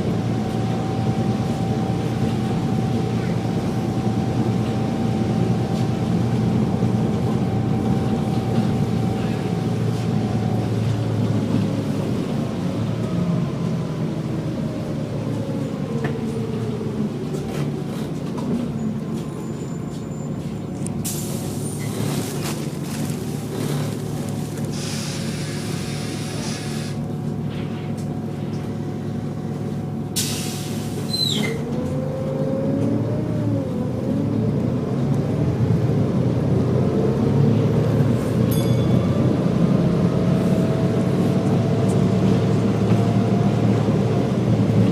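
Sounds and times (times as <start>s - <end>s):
bus engine with driveline whine: 0.0s - 44.9s
air hissing: 24.7s - 27.0s.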